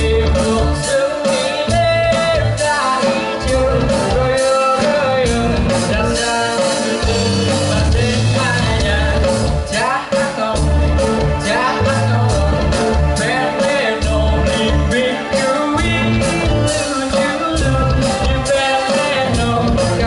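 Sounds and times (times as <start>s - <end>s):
live rock band playing: 0.0s - 20.0s
person singing: 0.0s - 20.0s.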